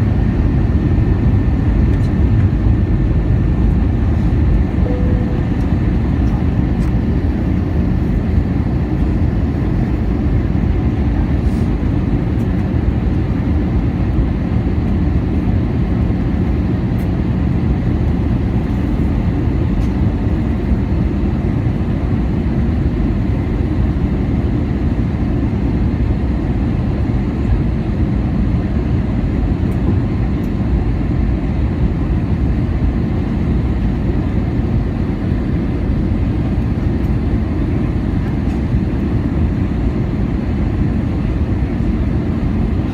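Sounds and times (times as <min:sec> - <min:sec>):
engine hum: 0:00.0 - 0:22.1
airflow rush in cabin: 0:00.0 - 0:42.9.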